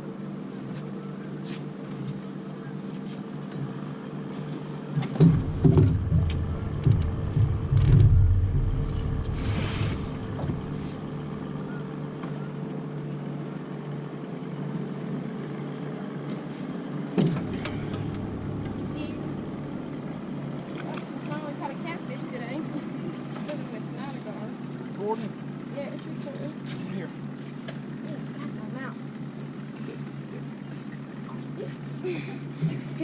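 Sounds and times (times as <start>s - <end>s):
boat motor running: 0.0s - 33.0s
loud thumps and knocks: 5.2s - 11.2s.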